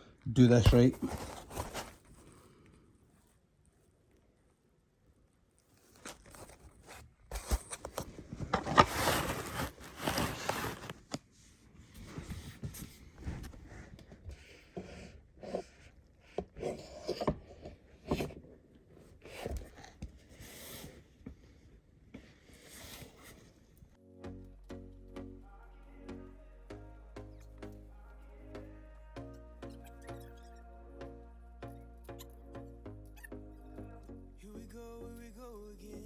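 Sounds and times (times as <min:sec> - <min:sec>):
chair parts scraping and clattering: 0:07.4 - 0:11.0.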